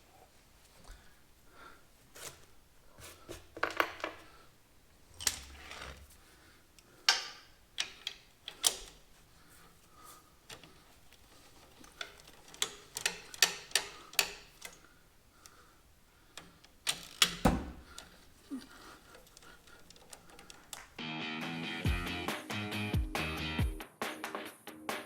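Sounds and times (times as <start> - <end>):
sharp clicks of hand tools: 7.0 - 9.0, 11.5 - 15.6
heavy knock on metal: 17.4 - 17.9
music: 21.0 - 25.0.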